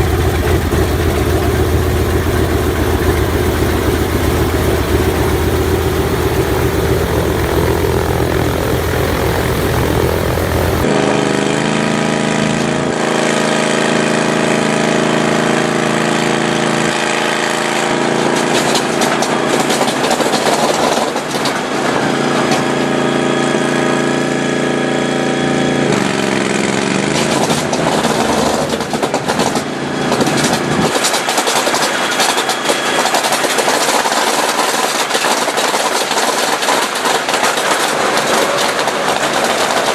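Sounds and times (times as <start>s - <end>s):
sharp crackles: 0.0s - 10.8s
piston aircraft engines droning: 0.0s - 12.8s, 16.9s - 39.9s.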